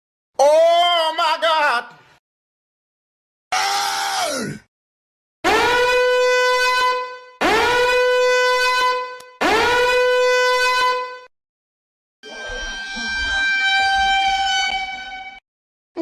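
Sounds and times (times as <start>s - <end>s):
brassy horn blasts: 5.4s - 11.3s.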